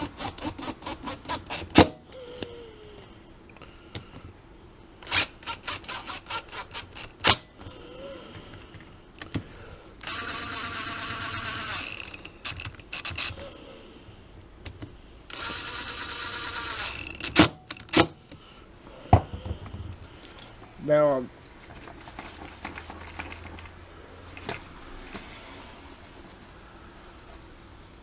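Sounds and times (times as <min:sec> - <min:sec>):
cordless screwdriver motor running: 0:10.0 - 0:13.4, 0:15.3 - 0:17.4
small metal parts clicking: 0:10.0 - 0:13.4.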